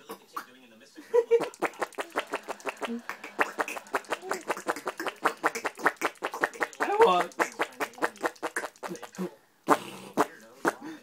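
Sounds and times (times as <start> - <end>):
baby making mouth clicks: 1.5 - 10.3
baby squeaking: 1.6 - 9.3.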